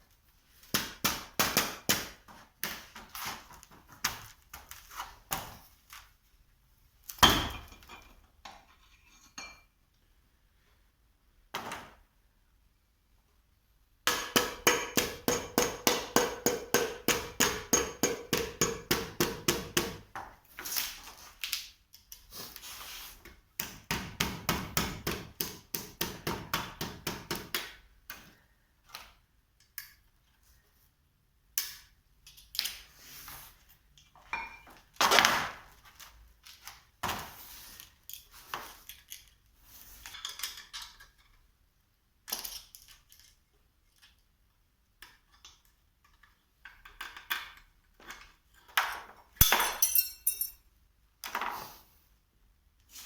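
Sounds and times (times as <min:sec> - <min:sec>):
hammer striking steel: 0:14.1 - 0:19.7, 0:49.4 - 0:50.6
metal parts and tools clanking: 0:49.4 - 0:50.6.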